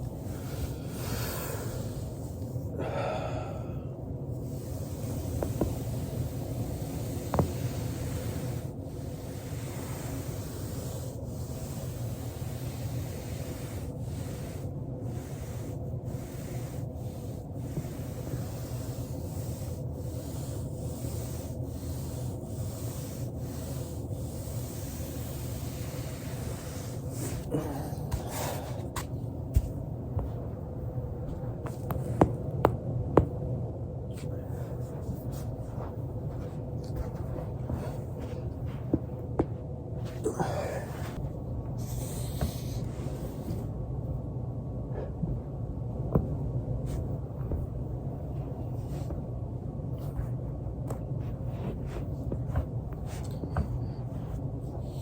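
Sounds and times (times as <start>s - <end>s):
person breathing out heavily: 0.3s - 4.0s, 40.2s - 41.2s
foam roller rubbing: 4.4s - 29.8s.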